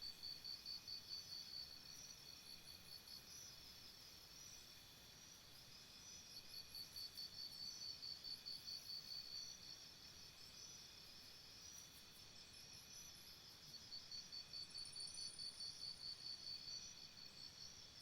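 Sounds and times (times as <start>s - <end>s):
faint high insect chirps: 0.0s - 18.0s
insect chirping trill: 6.0s - 18.0s.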